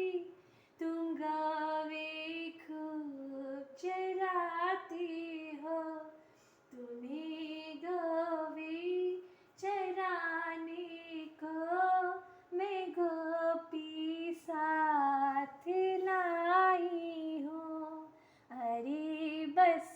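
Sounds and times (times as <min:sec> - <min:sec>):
woman singing unaccompanied: 0:00.0 - 0:19.9.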